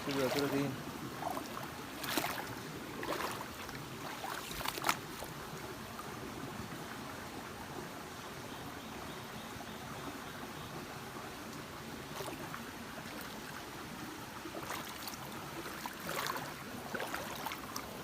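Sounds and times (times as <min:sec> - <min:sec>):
shallow river flowing: 0:00.0 - 0:18.0.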